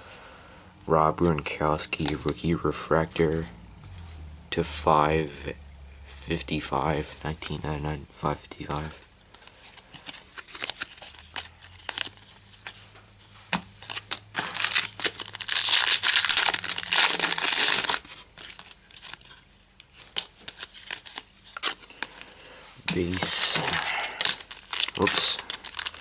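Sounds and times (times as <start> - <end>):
foil wrapper crinkling and tearing: 8.7 - 12.8, 13.8 - 26.0.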